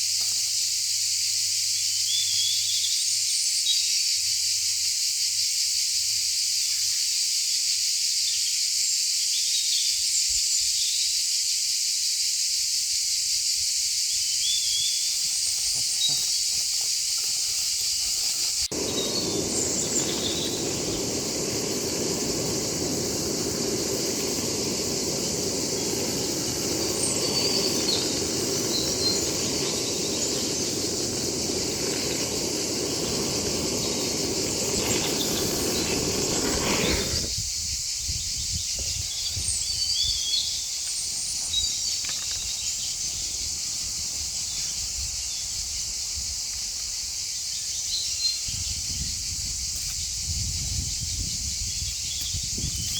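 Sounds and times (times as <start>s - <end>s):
high-pitched insect drone: 0.0s - 52.9s
low rushing noise: 18.7s - 37.3s.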